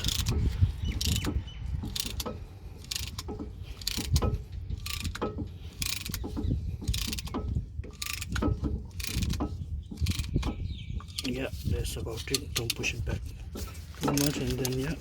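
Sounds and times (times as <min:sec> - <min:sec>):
piston compression tool clicking: 0:00.0 - 0:11.4
low rumble of handling: 0:00.0 - 0:15.0.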